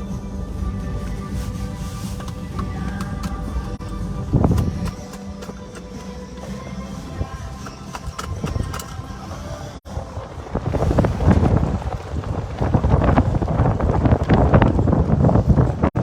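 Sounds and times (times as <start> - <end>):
background music steady tones: 0.0 - 11.4
gusty wind on microphone: 8.3 - 16.0.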